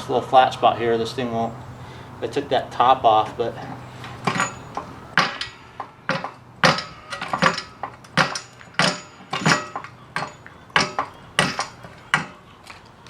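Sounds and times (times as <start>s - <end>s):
floor jack pumped by hand clanking: 2.8s - 13.0s.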